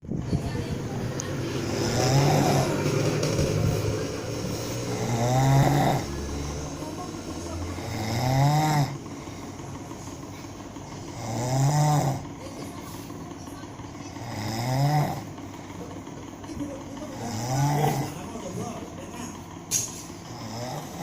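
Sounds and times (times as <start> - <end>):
person snoring loudly: 1.6 - 6.8, 7.6 - 9.3, 11.0 - 12.3, 14.1 - 15.3, 17.1 - 18.2, 20.3 - 21.0.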